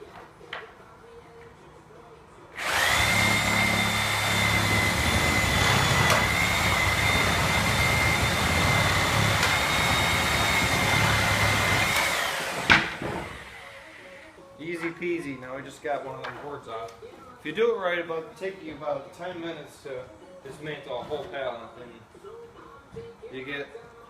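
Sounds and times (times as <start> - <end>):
reciprocating saw cutting nails: 2.6 - 13.6.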